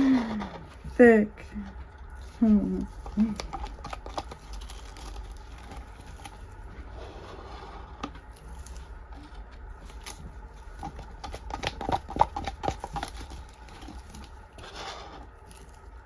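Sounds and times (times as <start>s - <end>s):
small tools tapping plastic: 3.0s - 5.8s, 10.8s - 14.3s.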